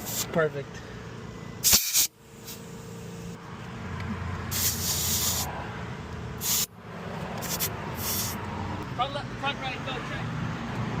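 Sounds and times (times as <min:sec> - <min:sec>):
compressed air hissing in bursts: 0:00.0 - 0:00.4, 0:01.6 - 0:03.0, 0:04.5 - 0:05.5, 0:06.4 - 0:06.8, 0:07.4 - 0:08.5
steady low hum: 0:00.0 - 0:09.8.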